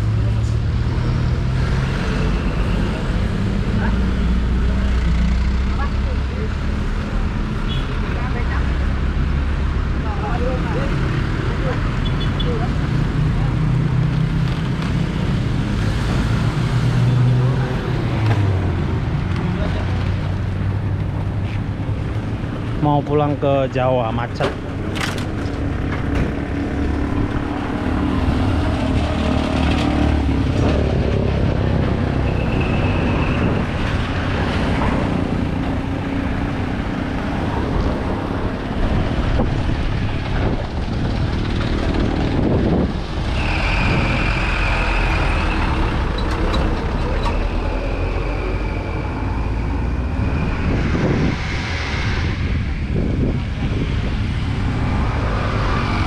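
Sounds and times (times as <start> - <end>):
vehicle engines running: 0.0 - 56.0.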